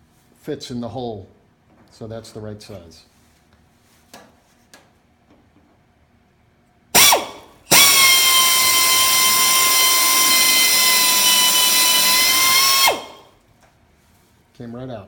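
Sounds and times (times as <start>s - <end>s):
air drill whining: 7.0s - 13.4s.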